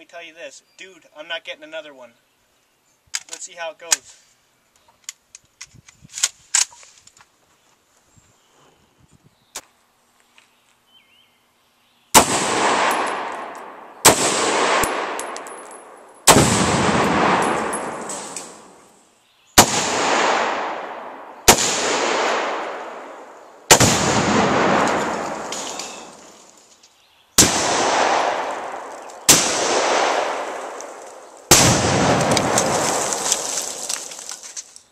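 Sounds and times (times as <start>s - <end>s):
rifle shots with rolling echo: 12.2s - 18.9s, 19.6s - 26.4s, 27.4s - 34.2s.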